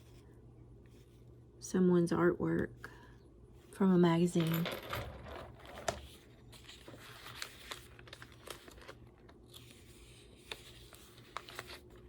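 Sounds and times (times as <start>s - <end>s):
paper pages rustling: 5.6s - 12.0s.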